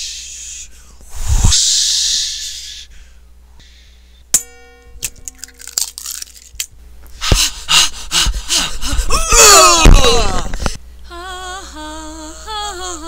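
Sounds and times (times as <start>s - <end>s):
wavering hummed note: 4.3s - 5.7s
people shrieking and panting: 7.4s - 10.7s.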